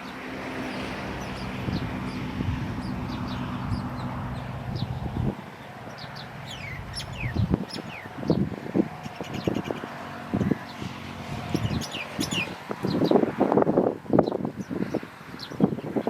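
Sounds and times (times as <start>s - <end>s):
small birds chirping: 0.0s - 13.4s, 14.1s - 16.0s
steady low hum: 0.9s - 9.2s.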